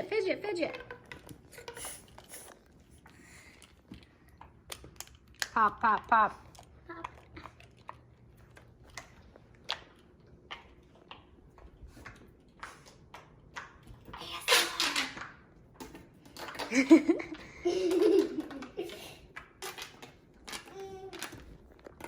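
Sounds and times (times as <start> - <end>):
child's voice: 20.7 - 21.4.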